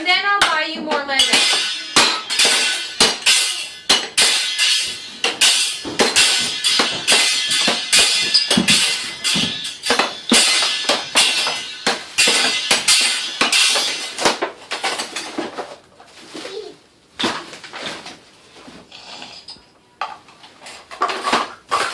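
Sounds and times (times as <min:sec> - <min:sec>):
banging and clattering: 0:00.0 - 0:15.9.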